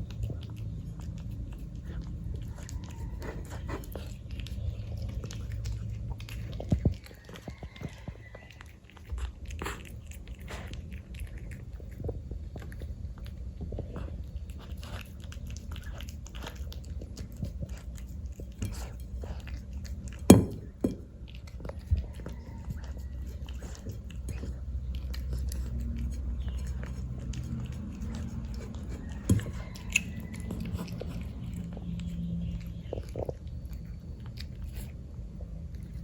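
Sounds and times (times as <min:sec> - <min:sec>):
cat chewing wetly: 0:00.0 - 0:36.0.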